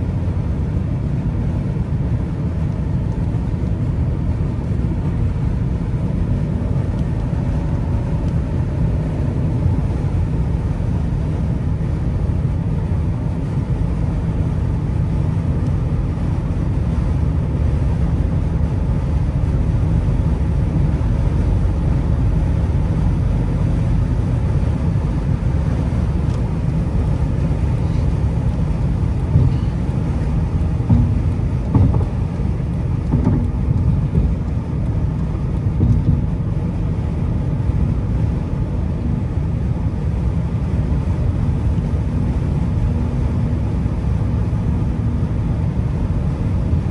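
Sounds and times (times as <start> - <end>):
car engine and road noise: 0.0 - 46.9
brief thumps: 27.8 - 34.5.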